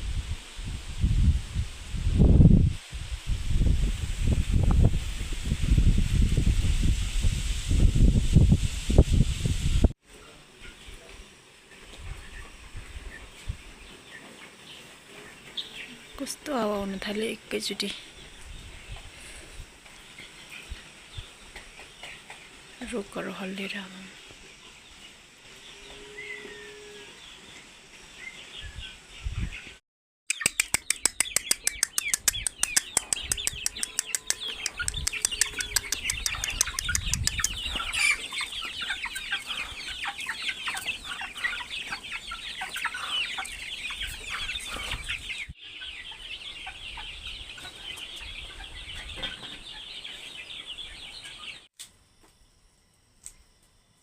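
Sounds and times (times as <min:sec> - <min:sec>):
chickens clucking: 0:10.1 - 0:51.6.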